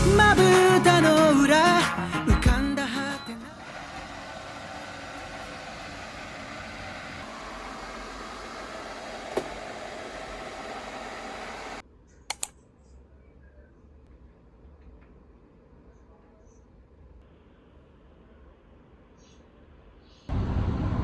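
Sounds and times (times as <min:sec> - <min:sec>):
mechanical whirring with clatter: 0:03.5 - 0:11.8
quick clicks: 0:11.3 - 0:12.6.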